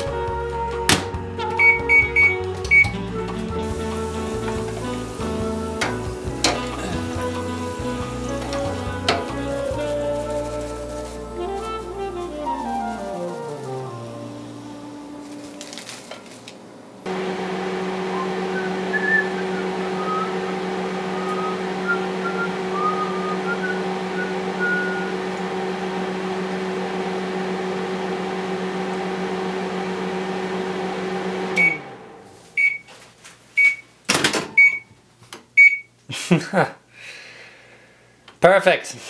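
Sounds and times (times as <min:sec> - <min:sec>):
microwave oven humming: 0:01.4 - 0:33.0
microwave beeps: 0:01.5 - 0:03.1, 0:17.8 - 0:25.2, 0:31.6 - 0:32.0, 0:32.6 - 0:32.9, 0:33.6 - 0:35.0, 0:35.6 - 0:36.0.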